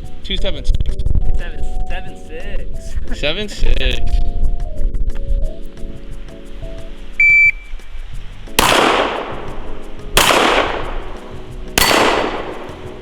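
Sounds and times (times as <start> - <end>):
shot timer beep: 7.2 - 7.6
gunshots with echoing tail: 8.6 - 13.0.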